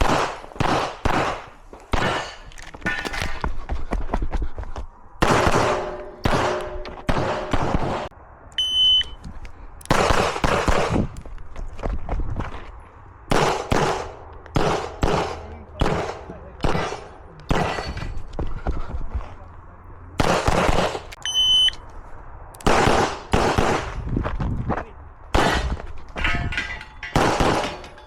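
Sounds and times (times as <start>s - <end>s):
handgun shots echoing: 5.2s - 8.1s
short high electronic beep: 8.6s - 9.2s, 21.2s - 21.8s.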